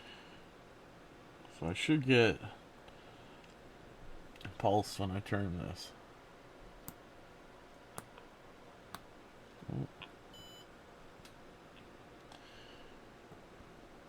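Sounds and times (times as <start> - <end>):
multimeter beep: 10.4 - 10.6.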